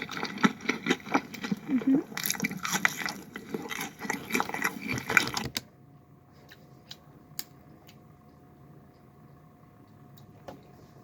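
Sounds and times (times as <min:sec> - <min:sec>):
crackly chewing of sandwich: 0:00.0 - 0:05.7.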